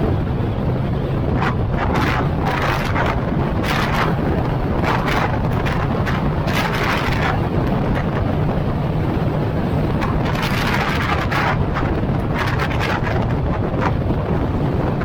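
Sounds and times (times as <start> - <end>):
car driving on road: 0.0 - 15.0
wind buffeting microphone: 0.0 - 15.0.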